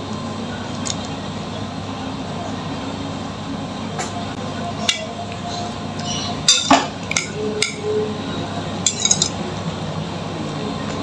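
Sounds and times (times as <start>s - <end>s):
utensils clinking against dishes: 6.0s - 8.0s, 8.8s - 9.4s.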